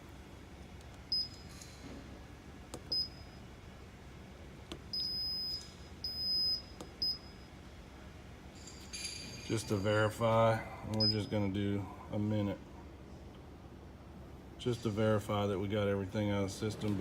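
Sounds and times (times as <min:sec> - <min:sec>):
high electronic beeps: 0:04.9 - 0:07.4.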